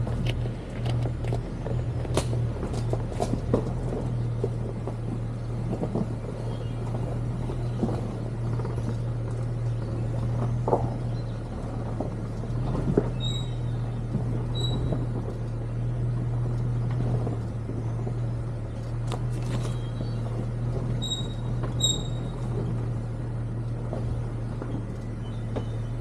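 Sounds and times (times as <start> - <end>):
car engine and cabin drone: 0.0 - 26.0
knocks and rattles from bumps: 0.0 - 26.0
short high squeaks: 13.1 - 13.8, 14.5 - 15.1, 20.9 - 22.5.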